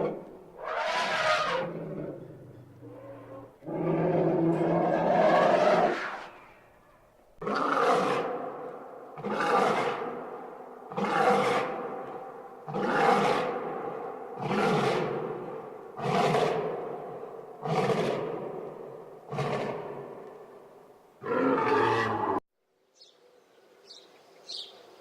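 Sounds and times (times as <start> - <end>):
animal roaring: 0.0 - 6.4, 7.4 - 8.4, 9.2 - 10.2, 10.9 - 16.8, 19.3 - 19.9, 21.2 - 22.4.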